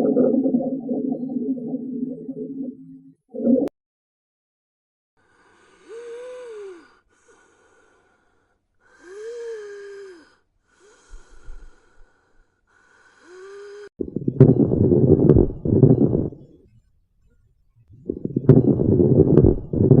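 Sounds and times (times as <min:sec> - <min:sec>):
wheezing breaths through stethoscope: 0:05.2 - 0:14.0.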